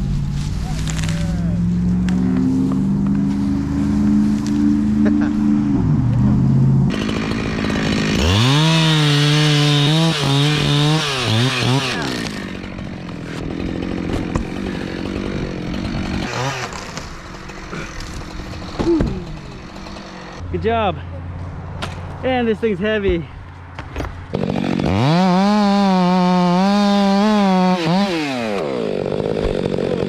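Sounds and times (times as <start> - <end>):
chainsaw revving and idling: 6.9 - 20.5, 24.3 - 30.0.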